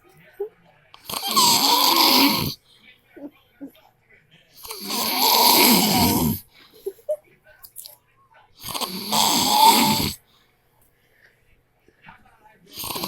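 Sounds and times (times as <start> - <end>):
man snoring: 1.0 - 2.6, 4.6 - 6.5, 8.6 - 10.2, 12.7 - 13.0.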